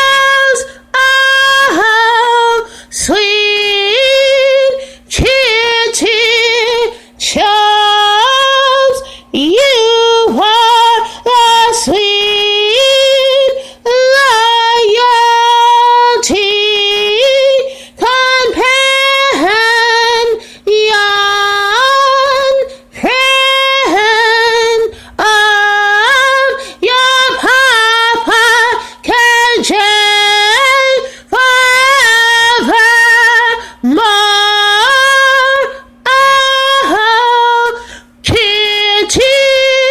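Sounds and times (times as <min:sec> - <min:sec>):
woman singing unaccompanied: 0:00.0 - 0:39.9
singer breathing: 0:02.7 - 0:02.9, 0:04.8 - 0:05.1, 0:09.0 - 0:09.4, 0:13.6 - 0:13.8, 0:17.7 - 0:18.0, 0:20.4 - 0:20.6, 0:24.9 - 0:25.2, 0:31.0 - 0:31.3, 0:37.8 - 0:38.2.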